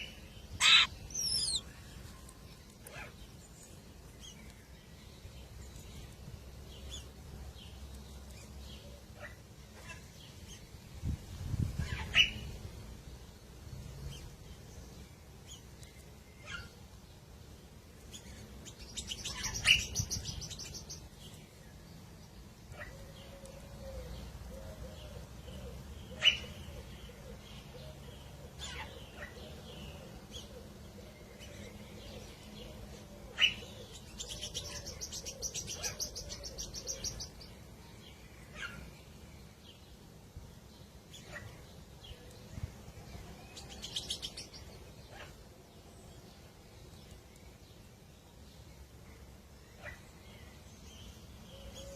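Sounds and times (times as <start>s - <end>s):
rapid high bird trilling: 0.0s - 1.7s
bird chirps: 0.0s - 6.1s, 27.6s - 39.8s, 43.1s - 45.4s.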